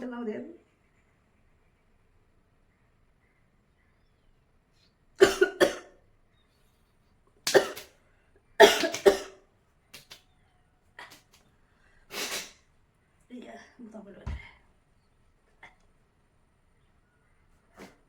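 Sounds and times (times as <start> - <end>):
woman coughing: 5.2 - 5.9, 7.5 - 7.9, 8.6 - 9.3.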